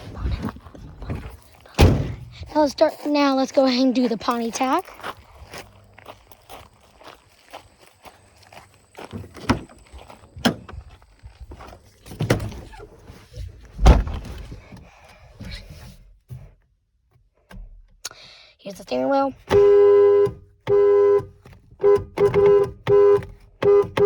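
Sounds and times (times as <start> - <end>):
footsteps: 0.0 - 15.7
car door opening and shutting: 1.0 - 2.4, 9.1 - 14.7, 19.4 - 24.0.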